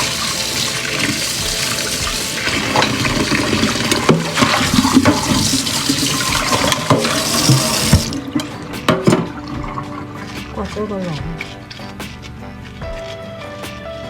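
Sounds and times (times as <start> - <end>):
tap running into a sink: 0.0 - 10.4.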